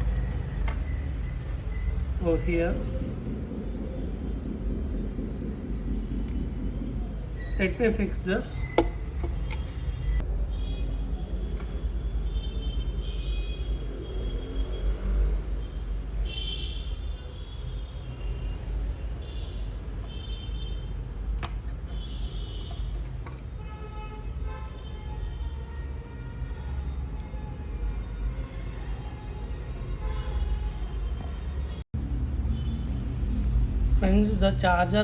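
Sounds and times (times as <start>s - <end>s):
road traffic rumble: 0.0s - 35.0s
vehicle horn toots: 16.2s - 17.6s.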